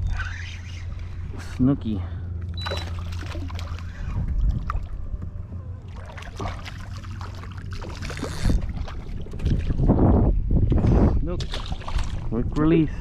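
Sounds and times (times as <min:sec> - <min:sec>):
wind rumbling on microphone: 0:00.0 - 0:01.6, 0:02.6 - 0:13.0
water splashing and lapping: 0:02.2 - 0:10.1, 0:11.4 - 0:12.4.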